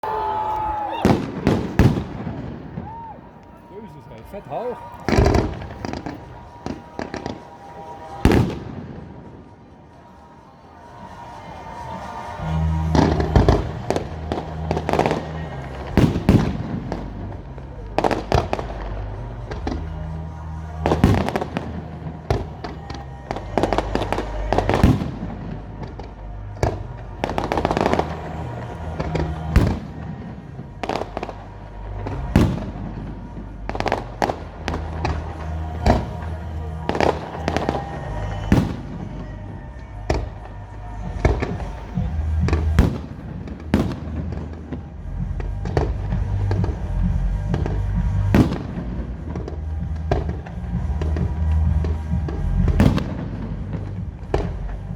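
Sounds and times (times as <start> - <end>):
fireworks bangs: 0.0 - 54.9
music with bass line: 12.0 - 54.9.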